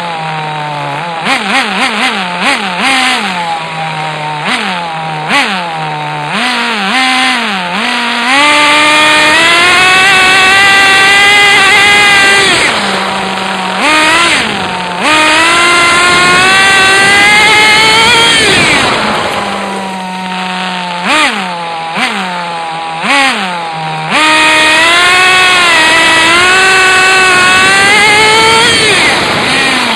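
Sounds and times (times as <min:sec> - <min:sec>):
small engine revving: 0:00.0 - 0:29.9.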